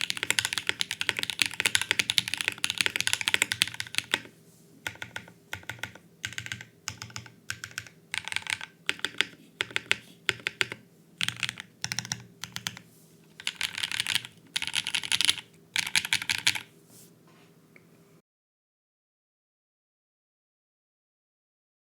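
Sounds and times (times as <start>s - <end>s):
mechanical keyboard typing: 0.0s - 12.8s, 13.4s - 16.7s.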